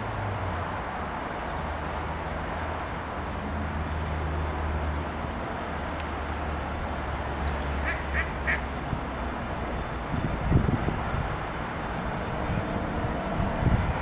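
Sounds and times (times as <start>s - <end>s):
bird calls: 7.4s - 8.7s.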